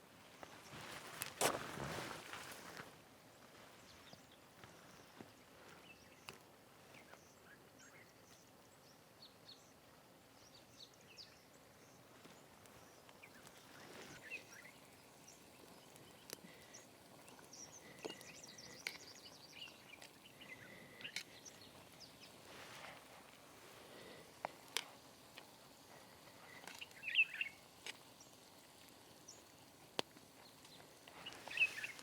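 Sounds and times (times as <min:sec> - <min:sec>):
faint forest ambience: 0:00.0 - 0:32.0
bird chirps: 0:17.4 - 0:22.4, 0:26.4 - 0:27.6, 0:30.7 - 0:32.0.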